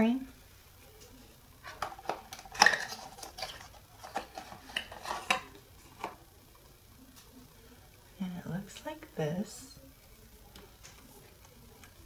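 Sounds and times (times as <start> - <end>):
packaging clicks and taps: 1.7 - 6.2.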